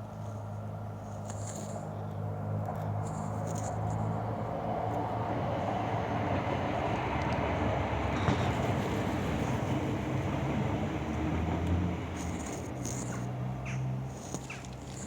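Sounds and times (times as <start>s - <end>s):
heavy vehicle rumbling past: 3.9s - 14.2s.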